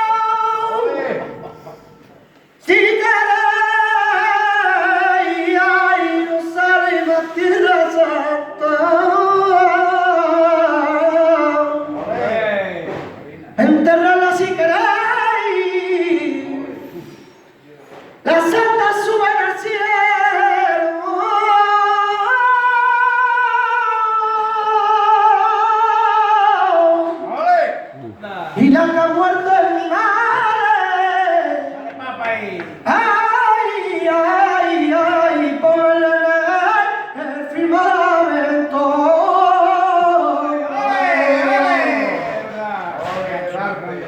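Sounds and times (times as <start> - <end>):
man singing flamenco: 13.6 - 16.6, 28.6 - 32.0, 32.7 - 40.8.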